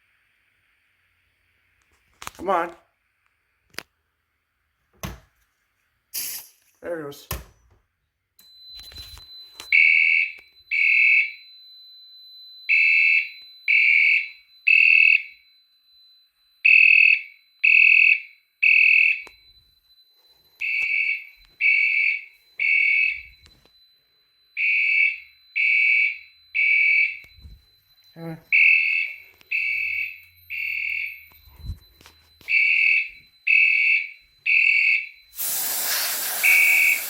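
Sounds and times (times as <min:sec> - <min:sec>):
fire alarm horn beeps: 0:08.4 - 0:11.5, 0:12.6 - 0:15.4, 0:16.3 - 0:19.7, 0:20.6 - 0:37.0.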